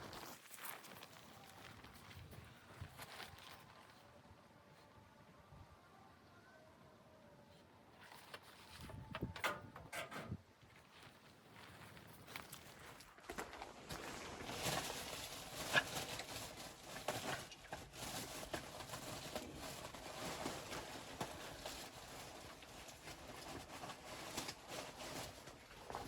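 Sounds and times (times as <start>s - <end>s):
footsteps crunching in snow: 0.0s - 4.0s, 10.6s - 26.0s.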